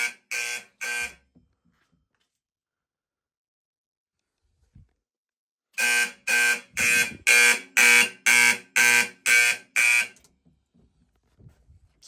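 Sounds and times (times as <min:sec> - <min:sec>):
fire alarm horn pulsing: 0:00.0 - 0:01.2, 0:05.8 - 0:10.2.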